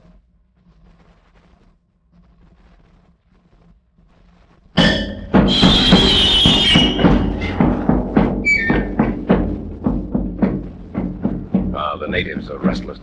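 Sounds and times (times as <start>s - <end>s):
record hiss: 0.0s - 13.0s
short high whistle: 4.8s - 7.2s
cymbal crash: 4.8s - 12.8s
drum beats: 4.8s - 13.0s.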